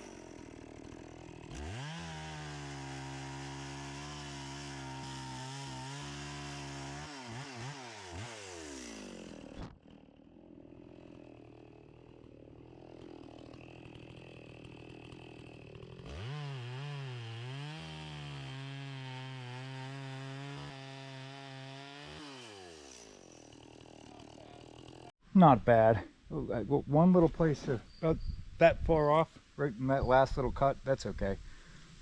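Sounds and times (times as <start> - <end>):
chainsaw ripping a log: 0.0 - 25.1.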